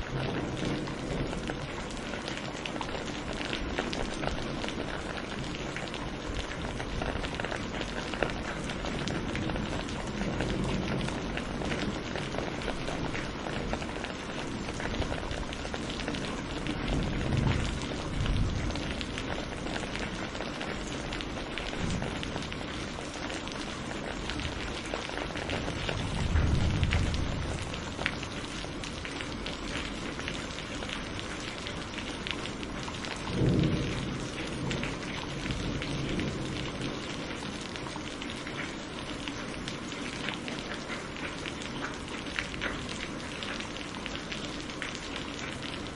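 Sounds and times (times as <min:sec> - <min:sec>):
thunder rumbling: 0:00.0 - 0:05.6, 0:06.2 - 0:29.5, 0:32.4 - 0:37.5
heavy rain hissing: 0:04.4 - 0:38.1.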